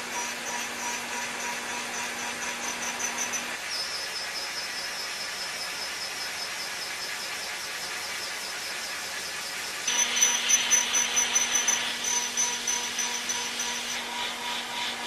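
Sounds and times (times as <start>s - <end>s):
milling machine cutting metal: 0.0s - 3.6s, 9.8s - 15.0s.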